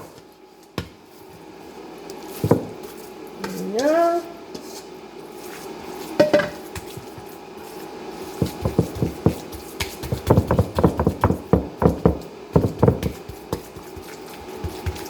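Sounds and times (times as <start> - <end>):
utensils knocking on pan and bowl: 6.2 - 7.1
batter being scraped: 6.8 - 11.5, 12.6 - 15.0.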